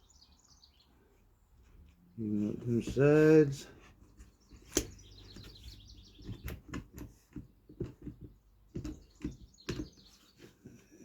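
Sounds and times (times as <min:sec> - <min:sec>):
wood and clamp clicking: 0:04.1 - 0:10.2.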